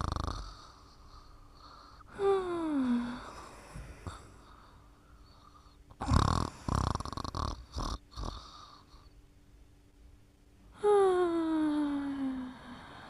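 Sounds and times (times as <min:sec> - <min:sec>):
rough rattling snore: 0:00.0 - 0:00.8, 0:06.0 - 0:08.8.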